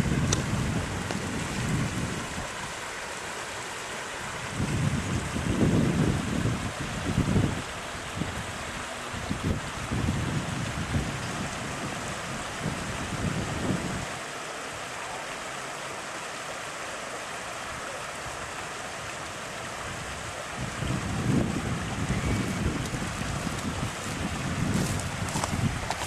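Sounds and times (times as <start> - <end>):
wind buffeting microphone: 0.0 - 2.8, 4.4 - 14.2, 19.8 - 26.0
rushing floodwater: 0.0 - 26.0.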